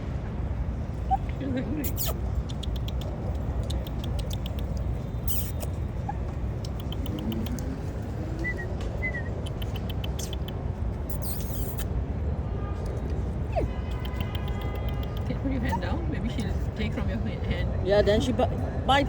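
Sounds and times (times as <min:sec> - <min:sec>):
squirrel crunching cookie: 0:01.8 - 0:05.7.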